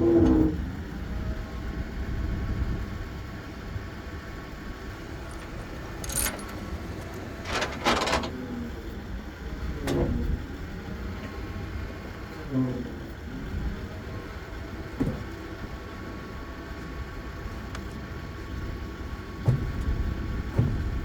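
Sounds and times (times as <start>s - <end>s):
heavy equipment engine idling: 4.8s - 8.3s
short metallic rattles: 4.9s - 8.3s.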